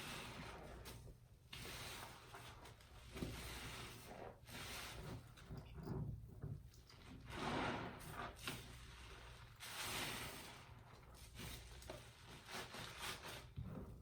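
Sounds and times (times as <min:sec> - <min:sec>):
wet sponge squelching: 0:07.3 - 0:13.6.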